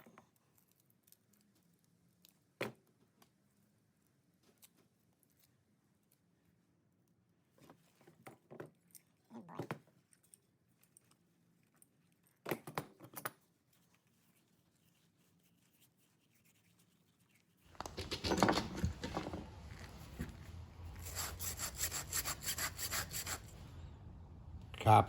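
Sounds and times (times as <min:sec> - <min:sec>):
loud rough scraping: 0:17.7 - 0:25.0.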